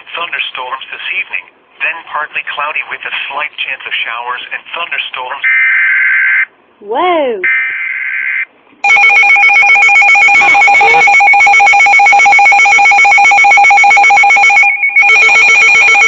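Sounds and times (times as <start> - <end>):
warbling alarm beep: 5.4 - 6.5, 7.4 - 16.0.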